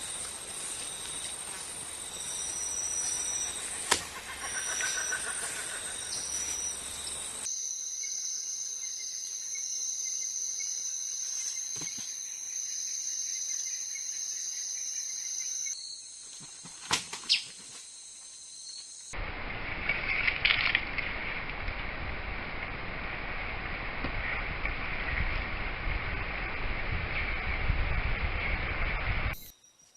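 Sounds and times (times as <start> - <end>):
insects trilling: 0.0 - 25.4.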